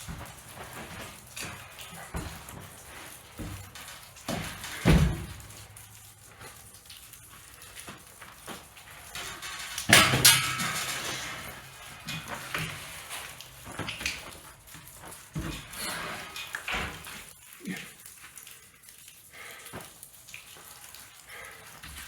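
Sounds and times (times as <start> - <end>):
knocks and clatter of wood and metal: 0.0 - 17.4.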